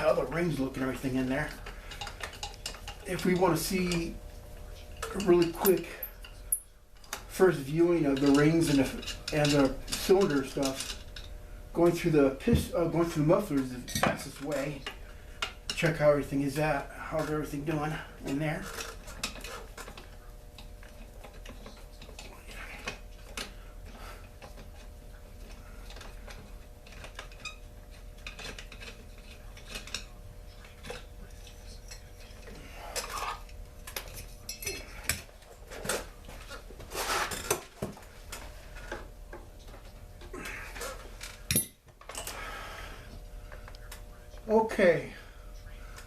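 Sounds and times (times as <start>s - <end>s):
metal tools clinking on metal: 0.4s - 4.2s, 5.0s - 7.1s, 7.9s - 11.0s, 30.8s - 36.1s, 40.8s - 42.4s.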